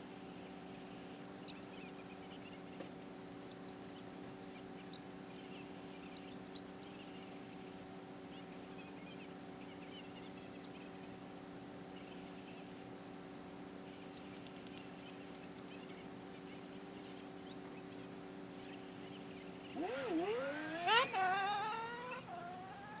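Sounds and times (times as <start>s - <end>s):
sharp clicks: 14.2s - 16.0s
engine revving: 19.8s - 23.0s.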